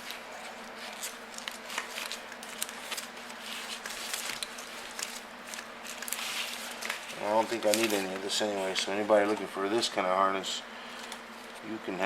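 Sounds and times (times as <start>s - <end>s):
wires clicking and crinkling: 0.0s - 9.5s
low electrical hum: 0.0s - 12.0s.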